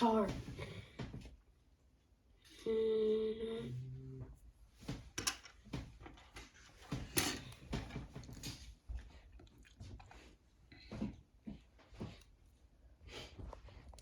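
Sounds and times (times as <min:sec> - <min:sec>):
plastic parts clicking and rustling: 0:06.2 - 0:08.6.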